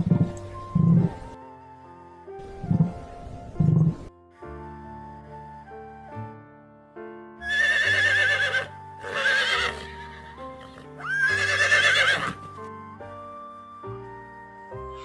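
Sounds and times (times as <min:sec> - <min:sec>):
background music: 0:00.0 - 0:15.0
horse whinnying: 0:07.4 - 0:12.6.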